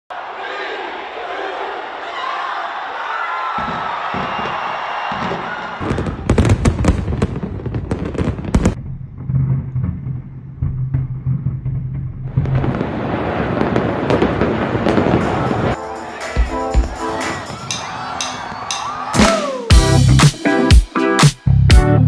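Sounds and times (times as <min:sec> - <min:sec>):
fireworks bangs: 0:03.5 - 0:09.0, 0:12.4 - 0:19.7
fireworks crackling: 0:05.1 - 0:08.8, 0:12.4 - 0:18.0.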